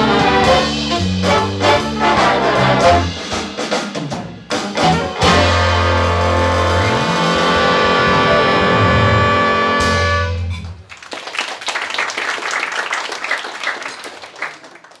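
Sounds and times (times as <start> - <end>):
jazz big band chord: 0.0 - 10.8
audience applause: 10.6 - 15.0.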